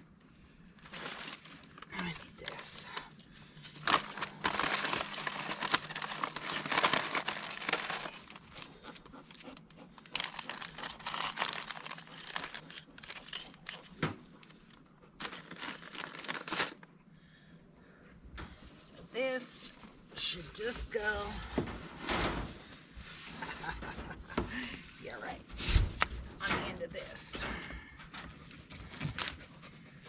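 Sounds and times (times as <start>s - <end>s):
material crinkling and rustling: 0.8s - 3.0s, 3.6s - 9.4s, 10.0s - 16.9s.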